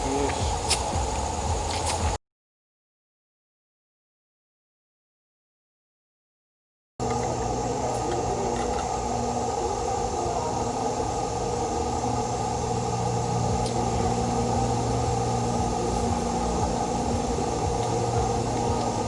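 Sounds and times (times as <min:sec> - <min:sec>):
string trimmer engine running: 0:00.0 - 0:02.2, 0:07.0 - 0:19.0.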